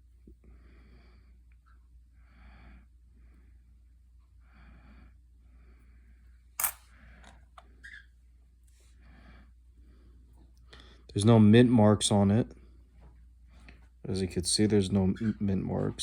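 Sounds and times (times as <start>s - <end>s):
soft breathing: 0.2s - 8.0s, 8.6s - 11.1s, 12.5s - 14.0s.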